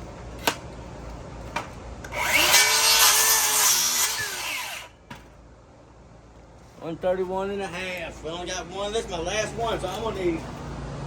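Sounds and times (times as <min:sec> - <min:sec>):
electric saw cutting wood: 0:02.1 - 0:04.9.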